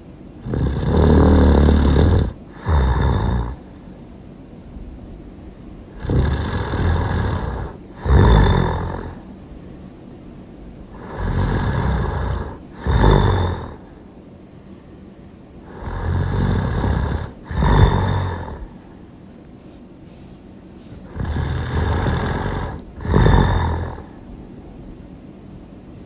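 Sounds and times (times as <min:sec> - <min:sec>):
person snoring loudly: 0:00.4 - 0:03.7, 0:05.9 - 0:09.2, 0:10.9 - 0:14.0, 0:15.6 - 0:18.8, 0:21.0 - 0:24.2.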